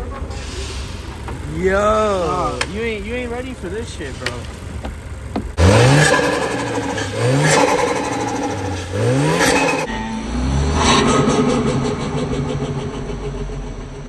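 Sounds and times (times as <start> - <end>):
car engine revving: 0.0 - 14.0.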